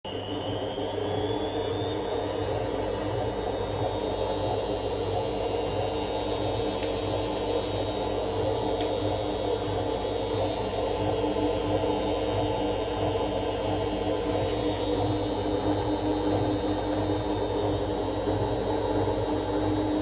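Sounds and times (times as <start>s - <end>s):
washing machine hum and rattle: 0.2s - 20.0s.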